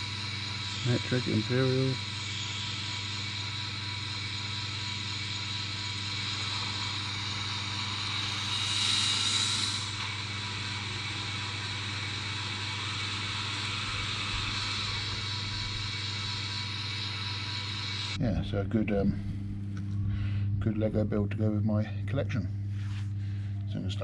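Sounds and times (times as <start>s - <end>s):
rushing hiss: 0.0s - 18.2s
faint steady tones: 0.0s - 22.1s
engine-like hum: 0.0s - 22.6s.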